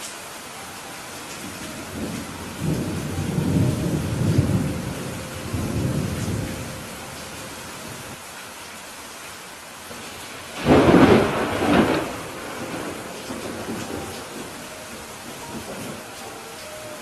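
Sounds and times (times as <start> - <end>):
heavy rain falling: 0.0 - 17.0
thunder rumbling: 1.4 - 8.2, 10.5 - 17.0.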